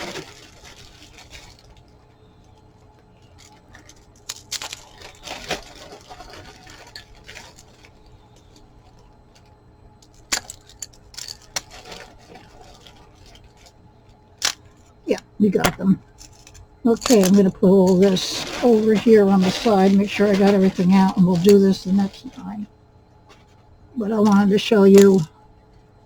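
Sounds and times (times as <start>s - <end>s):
jewelry and packaging rustling: 0.0s - 2.0s, 2.6s - 13.9s, 14.5s - 25.3s
steady low hum: 0.0s - 26.0s.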